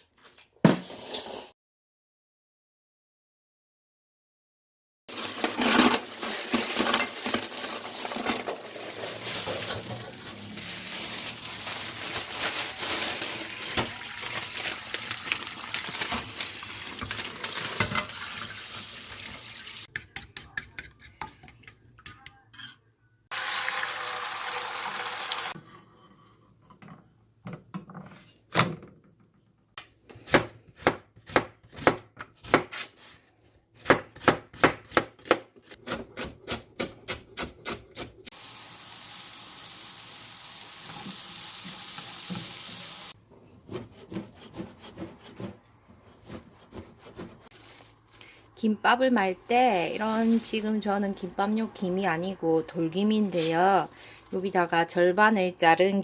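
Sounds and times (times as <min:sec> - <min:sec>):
tap water running: 0:13.6 - 0:19.9, 0:38.3 - 0:43.2
knife chopping on cutting board: 0:30.3 - 0:32.9, 0:33.8 - 0:38.1, 0:43.6 - 0:47.5.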